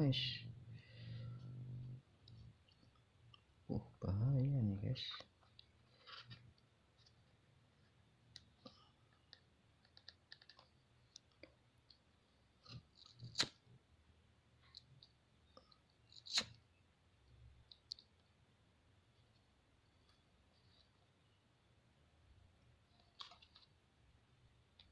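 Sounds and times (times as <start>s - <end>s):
small parts clicking and tapping: 8.3s - 12.0s.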